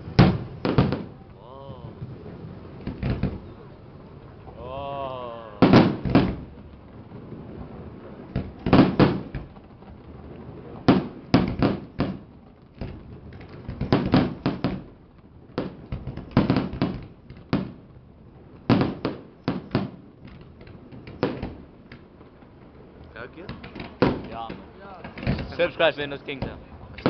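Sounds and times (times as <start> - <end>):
fireworks shells bursting: 5.6 - 6.6, 10.8 - 14.9, 18.7 - 22.1, 23.4 - 27.0.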